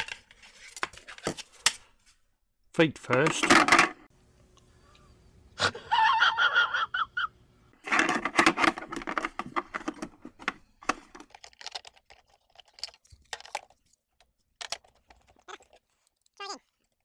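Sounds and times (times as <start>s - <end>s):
plastic parts clicking and rattling: 0.0s - 2.0s, 2.8s - 4.1s, 7.8s - 17.0s.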